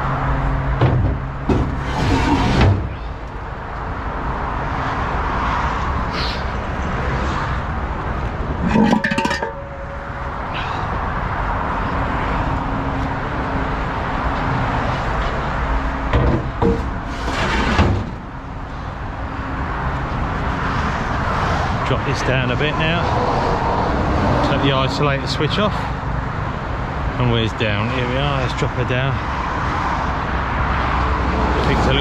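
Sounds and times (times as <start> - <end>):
metal clanks and ringing: 8.6 - 10.8.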